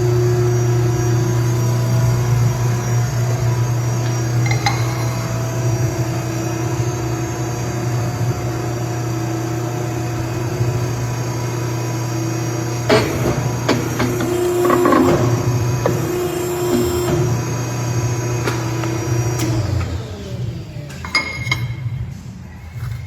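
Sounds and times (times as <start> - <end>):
hydraulic motor and pump humming: 0.0 - 23.0.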